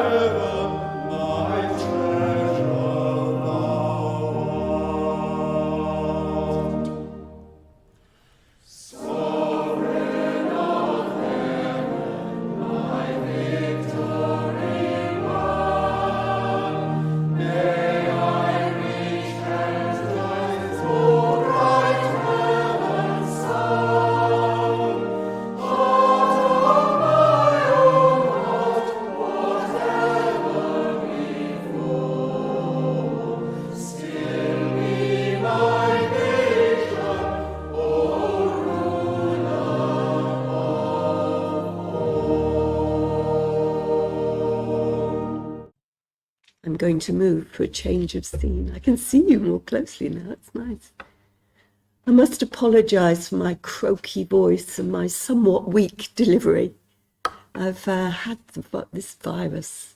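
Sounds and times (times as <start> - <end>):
choir singing in parts: 0.0 - 7.6, 8.6 - 45.7.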